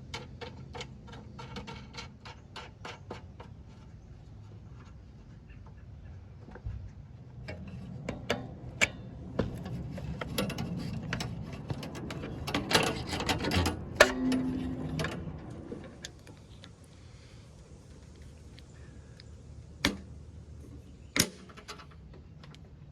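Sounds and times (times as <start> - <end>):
hand tools clicking and knocking: 7.4 - 16.2.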